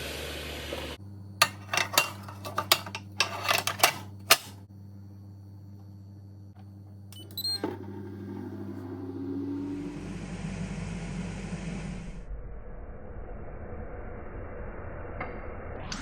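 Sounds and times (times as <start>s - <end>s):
steady low hum: 0.0s - 15.8s
kitchenware clinking and clattering: 1.4s - 4.5s.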